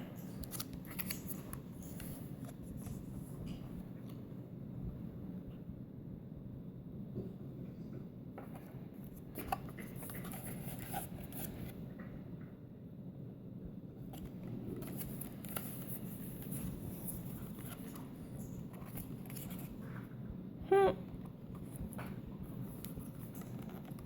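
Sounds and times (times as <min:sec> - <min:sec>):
paper rustling: 0:00.4 - 0:03.6, 0:08.6 - 0:11.8, 0:14.1 - 0:20.1.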